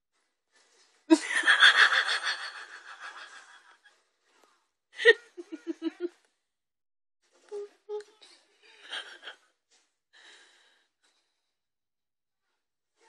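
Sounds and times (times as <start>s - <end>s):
person laughing: 5.0s - 6.2s.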